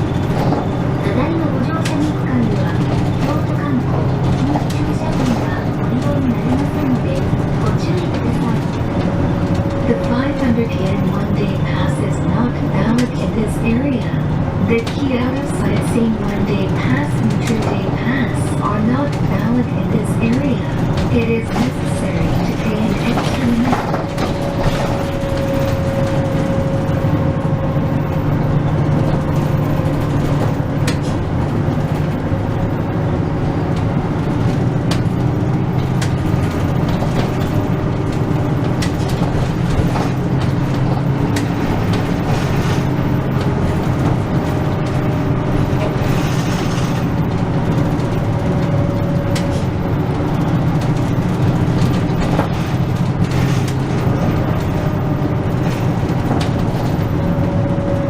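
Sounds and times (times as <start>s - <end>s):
bus engine and road drone: 0.0s - 58.0s
small rattles and clicks: 33.7s - 57.6s.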